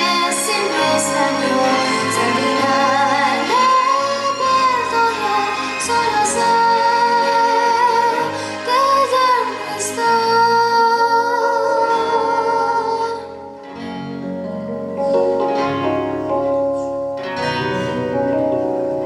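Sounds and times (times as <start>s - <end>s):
children's choir singing: 0.0s - 13.4s
instrumental accompaniment: 0.0s - 19.0s.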